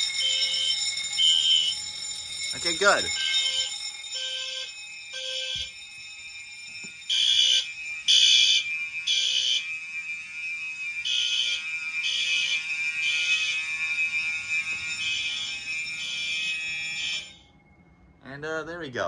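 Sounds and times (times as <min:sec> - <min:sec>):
steady high tone: 0:00.0 - 0:10.9
fire alarm blasts: 0:00.0 - 0:18.4.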